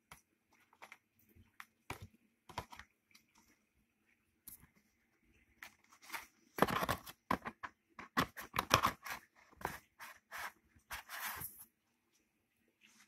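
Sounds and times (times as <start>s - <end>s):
plastic cases clacking: 6.2s - 9.2s.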